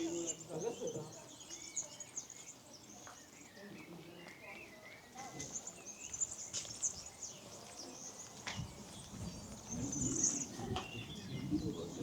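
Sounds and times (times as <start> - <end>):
small birds chirping: 0.0 - 12.0.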